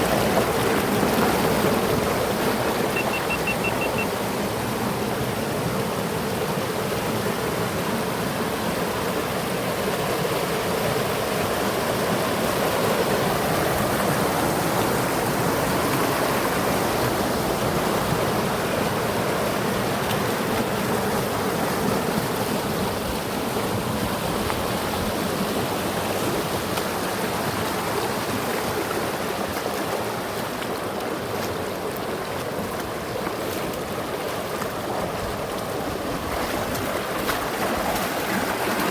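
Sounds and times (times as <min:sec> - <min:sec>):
river water rushing: 0:00.0 - 0:38.9.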